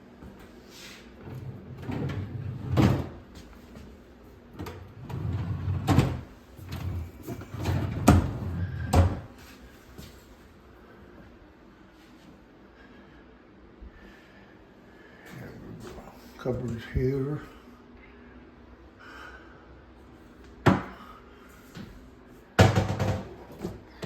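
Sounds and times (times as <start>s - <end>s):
drawers sliding: 1.2s - 3.2s, 4.6s - 9.3s
drawer knocking shut: 22.6s - 23.8s.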